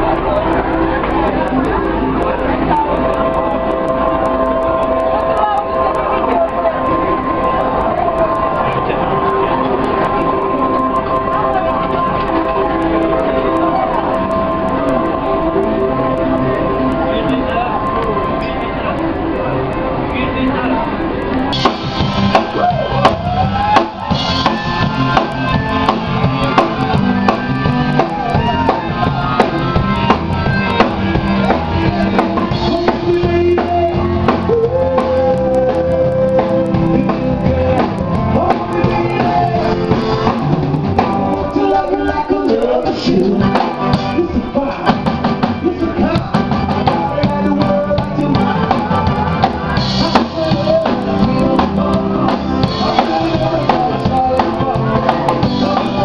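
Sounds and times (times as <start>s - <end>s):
drum kit: 21.3s - 56.0s
singing: 21.5s - 56.0s.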